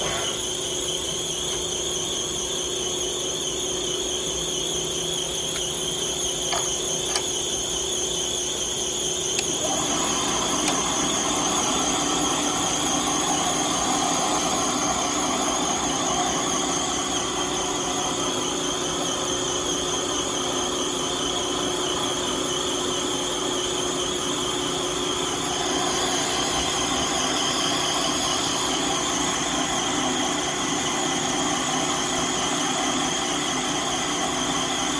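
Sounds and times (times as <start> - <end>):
clicks: 6.5 - 7.4, 10.6 - 10.9
metal lathe whining: 9.0 - 34.9.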